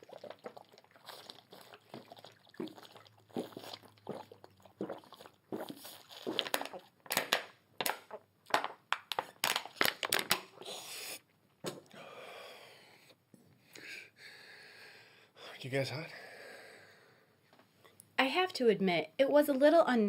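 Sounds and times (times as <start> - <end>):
crinkling and crunching handling: 5.5 - 10.6.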